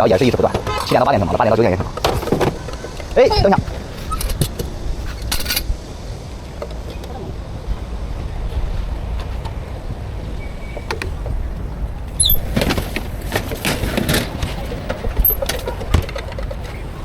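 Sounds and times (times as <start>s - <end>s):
clattering and scraping: 0.0s - 17.0s
passing traffic rumble: 0.0s - 17.0s.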